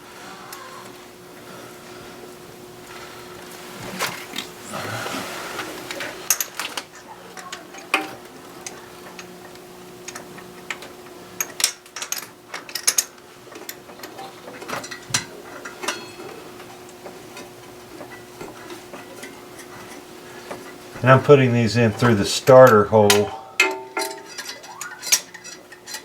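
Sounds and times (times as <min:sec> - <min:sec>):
faint steady hum: 0:00.0 - 0:26.0
metal clinks: 0:22.7 - 0:26.0.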